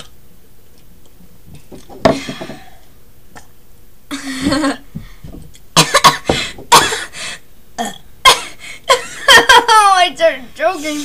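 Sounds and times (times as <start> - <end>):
girl coughing: 5.8 - 7.1, 7.8 - 9.6
throaty burp: 7.8 - 8.1.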